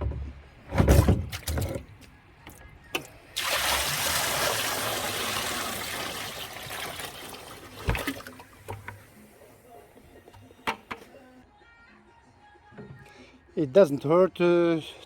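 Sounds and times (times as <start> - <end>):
handling clunks: 0.0 - 3.2, 7.8 - 9.2, 10.0 - 11.2
water pouring into fryer: 3.3 - 9.6.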